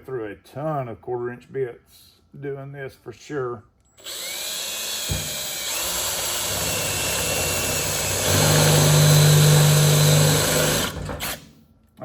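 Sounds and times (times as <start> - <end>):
electric drill boring into steel: 4.0 - 11.4.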